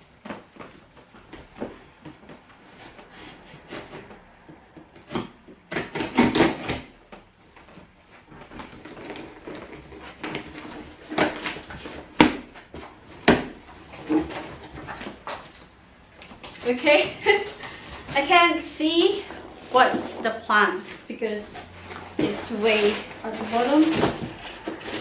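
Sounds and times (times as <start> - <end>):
cardboard box scraping and rustling: 2.6 - 4.3, 12.8 - 15.4, 16.6 - 25.0.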